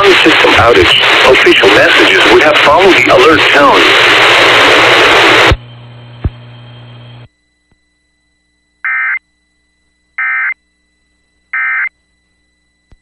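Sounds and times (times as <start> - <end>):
faint static: 0.0 - 13.0
digital data tone bursts: 11.6 - 11.9.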